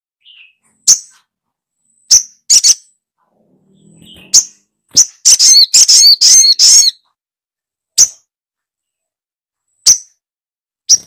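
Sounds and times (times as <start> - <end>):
high bird calls: 0.2 - 1.3, 1.9 - 7.0.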